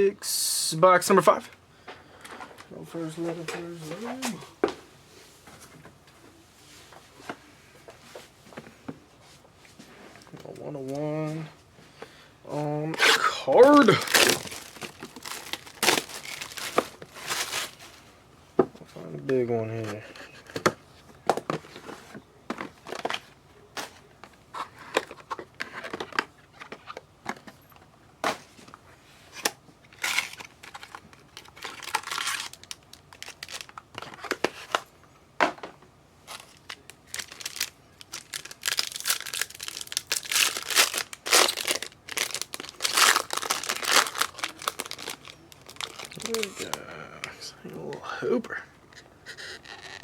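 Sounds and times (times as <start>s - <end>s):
card packaging crinkling and tearing: 13.0s - 17.8s, 30.0s - 34.8s, 36.2s - 47.4s.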